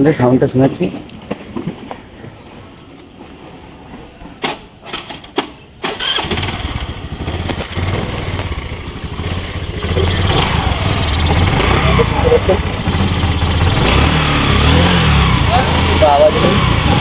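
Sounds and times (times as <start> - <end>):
scooter starter clicks: 4.4 - 6.8
scooter engine idling: 5.9 - 17.0.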